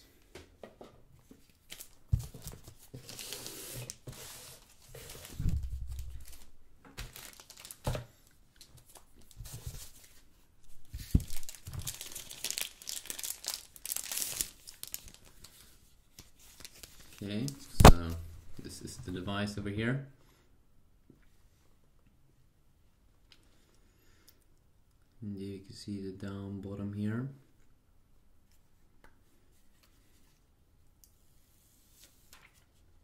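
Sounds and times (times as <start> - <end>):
plastic packaging crinkling: 5.2 - 8.0, 11.0 - 15.6, 16.2 - 17.9.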